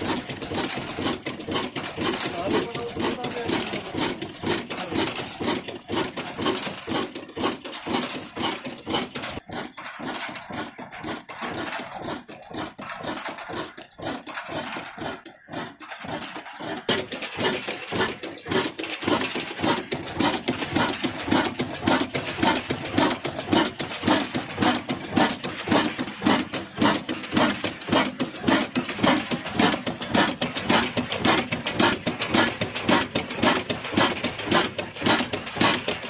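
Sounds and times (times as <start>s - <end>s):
diesel engine pulsing steadily: 16.9s - 36.0s.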